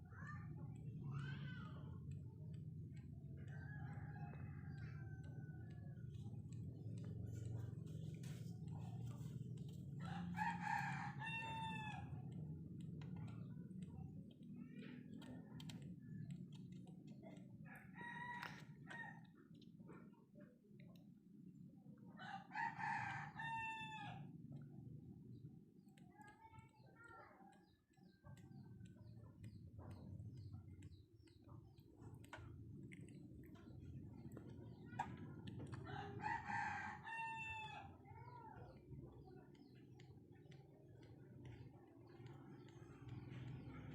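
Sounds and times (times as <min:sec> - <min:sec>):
low steady rumble: 0:00.0 - 0:26.8, 0:27.9 - 0:43.9
faint ticking: 0:00.4 - 0:10.4, 0:12.0 - 0:19.7, 0:24.5 - 0:35.9, 0:38.6 - 0:43.9
rooster crowing: 0:35.9 - 0:37.8.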